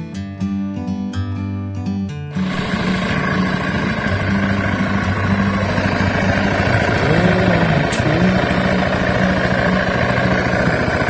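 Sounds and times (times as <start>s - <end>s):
scooter engine idling: 2.3s - 11.0s.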